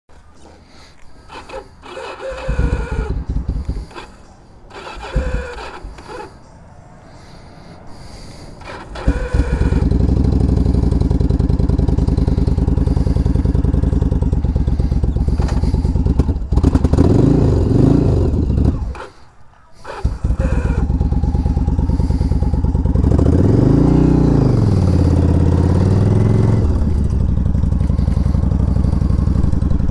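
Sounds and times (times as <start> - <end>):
electric starter cranking: 1.3 - 6.4, 8.6 - 11.2, 12.2 - 22.6
motorcycle engine running: 1.3 - 6.4, 8.6 - 19.2, 19.8 - 29.9
motorcycle engine revving: 1.3 - 6.6, 8.0 - 29.9.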